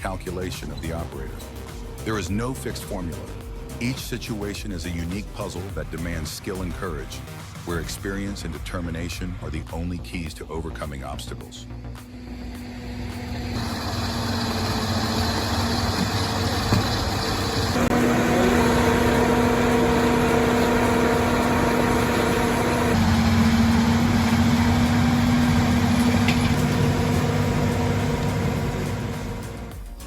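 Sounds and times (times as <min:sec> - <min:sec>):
diesel machinery engine under load: 0:12.3 - 0:29.7.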